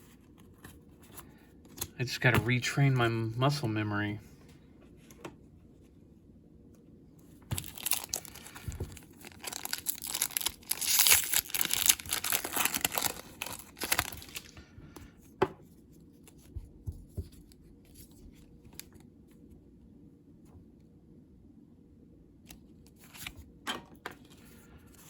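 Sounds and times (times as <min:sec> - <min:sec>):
foil wrapper tearing and crinkling: 0:07.5 - 0:14.6.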